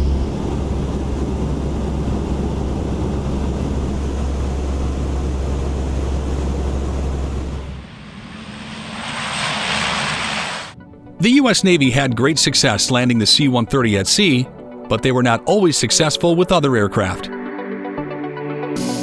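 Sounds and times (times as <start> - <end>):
propeller aircraft engines droning: 0.0 - 17.3
rushing hiss: 7.8 - 10.8.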